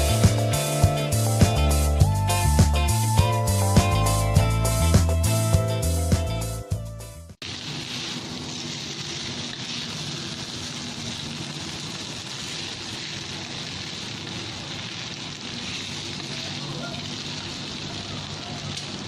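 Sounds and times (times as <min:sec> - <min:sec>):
noodles sizzling in a pan: 0:07.4 - 0:19.0.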